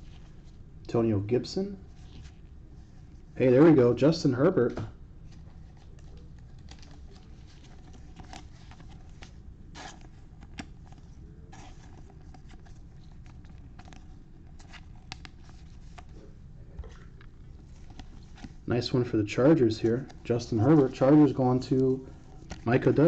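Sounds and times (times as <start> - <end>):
faint low hum: 0.0 - 23.0
cards clicking and rustling: 5.3 - 16.2, 16.8 - 18.7, 19.4 - 23.0.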